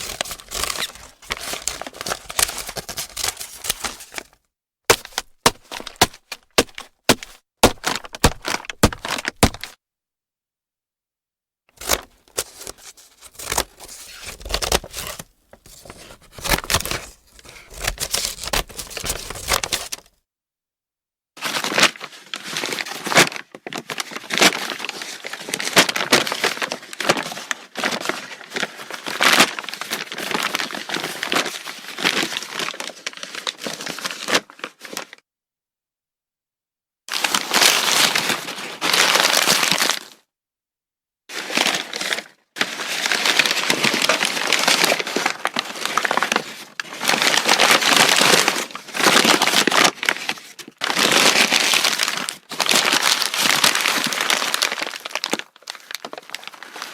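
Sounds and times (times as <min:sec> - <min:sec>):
paper bag crumpling: 0:00.0 - 0:09.7, 0:11.8 - 0:20.1, 0:41.3 - 0:56.9.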